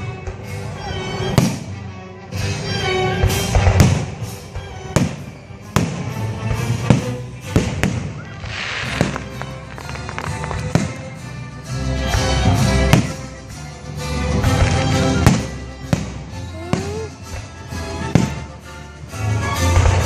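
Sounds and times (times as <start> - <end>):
music playing: 0.0 - 20.0
fireworks bangs: 6.8 - 11.2
fireworks crackle: 7.0 - 11.3.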